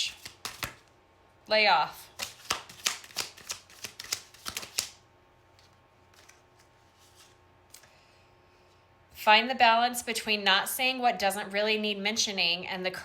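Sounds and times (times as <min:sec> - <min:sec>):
cards being shuffled: 0:00.0 - 0:00.9, 0:02.1 - 0:07.9.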